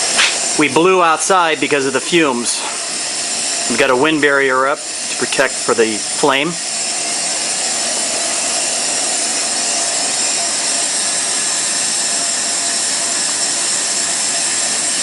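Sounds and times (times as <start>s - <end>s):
gas burner flame hissing: 0.0s - 15.0s.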